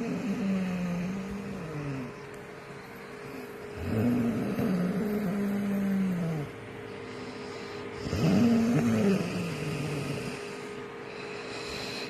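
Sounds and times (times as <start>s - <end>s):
man snoring loudly: 0.0s - 2.1s, 3.8s - 6.5s, 8.0s - 10.4s.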